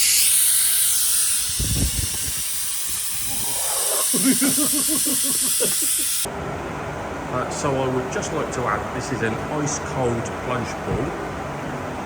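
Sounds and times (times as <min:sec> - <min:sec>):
loud steady hissing: 0:00.0 - 0:06.3.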